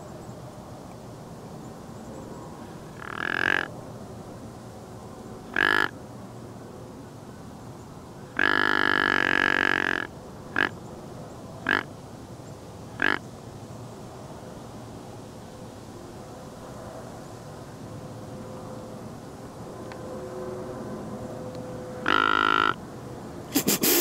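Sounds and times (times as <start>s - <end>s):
deer grunt call: 2.8s - 3.7s, 5.5s - 5.9s, 8.4s - 10.8s, 11.6s - 11.9s, 13.0s - 13.2s, 22.0s - 22.8s.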